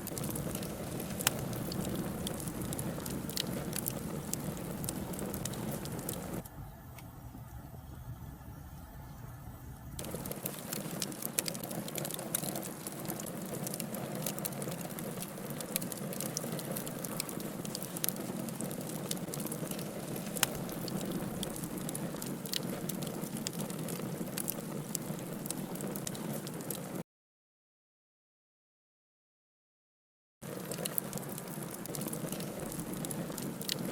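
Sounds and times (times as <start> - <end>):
wood fire crackling and popping: 0.0 - 6.5, 10.0 - 27.0, 30.4 - 33.9.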